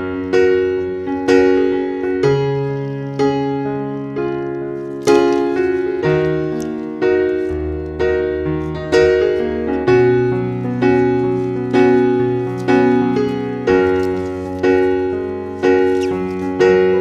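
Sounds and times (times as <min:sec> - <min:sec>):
slow piano chords: 0:00.0 - 0:17.0.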